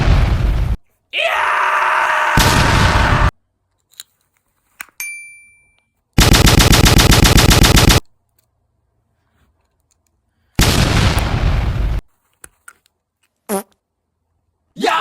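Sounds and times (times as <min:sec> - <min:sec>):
bright ding: 0:05.0 - 0:06.0
machine-gun fire: 0:06.2 - 0:08.0
click: 0:09.6 - 0:10.2.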